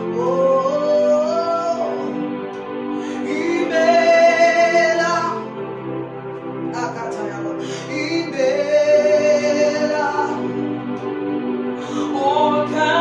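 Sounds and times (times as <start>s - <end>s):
sustained accompaniment chords: 0.0s - 13.0s
person singing long notes: 6.7s - 13.0s.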